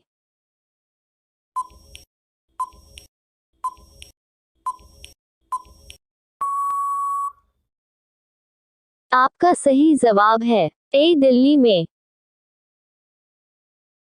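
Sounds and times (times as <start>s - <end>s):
short electronic beeps: 1.6s - 1.9s, 4.7s - 7.4s
long steady beep: 6.4s - 7.4s.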